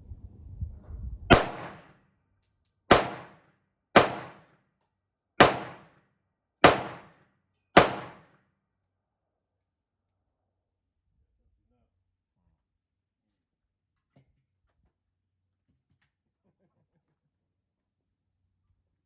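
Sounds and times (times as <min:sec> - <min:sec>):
gunshots: 0:01.3 - 0:01.8, 0:02.9 - 0:03.4, 0:04.0 - 0:04.4, 0:05.4 - 0:05.9, 0:06.6 - 0:07.2, 0:07.8 - 0:08.3.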